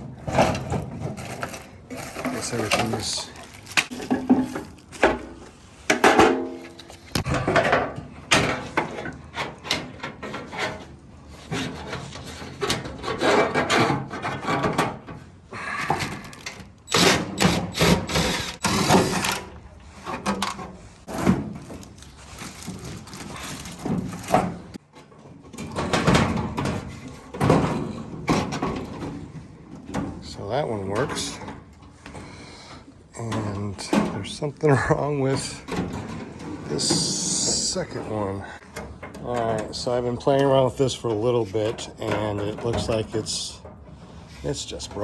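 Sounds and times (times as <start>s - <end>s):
metal knocks and clanks: 4.0s - 15.2s
drawers sliding: 16.1s - 24.8s.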